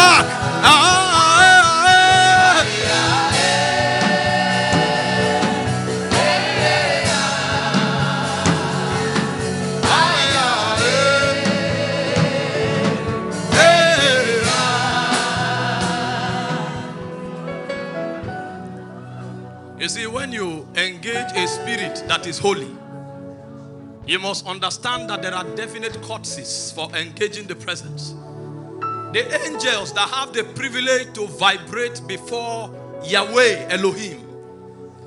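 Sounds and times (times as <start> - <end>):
voices singing gospel song: 0.0 - 17.6
instrumental backing: 0.0 - 35.0.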